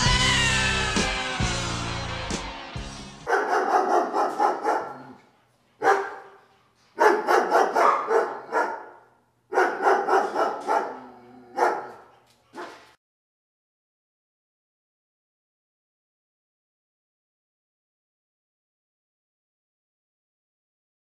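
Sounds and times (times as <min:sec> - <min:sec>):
dog barking: 0:03.2 - 0:05.2, 0:05.8 - 0:13.0.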